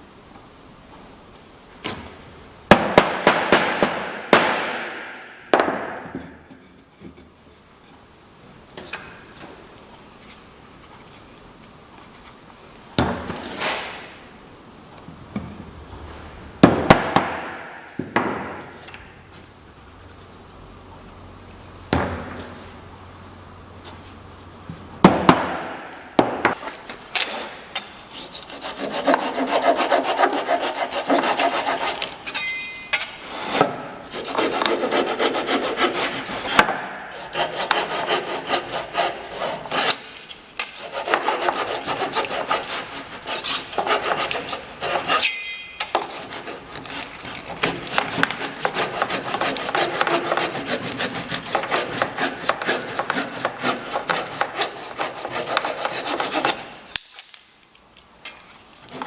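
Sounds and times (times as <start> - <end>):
hand tool rubbing wood: 26.5 - 32.4, 33.1 - 57.0.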